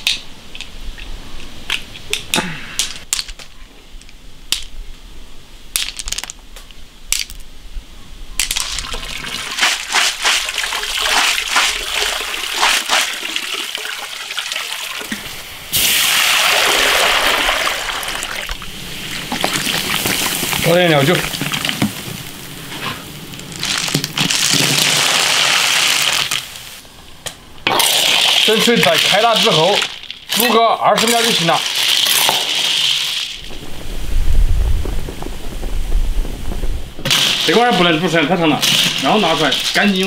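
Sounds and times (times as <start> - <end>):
gush of pouring water: 8.6 - 26.8, 27.7 - 33.7
snail shells clicking and clattering: 27.8 - 33.5.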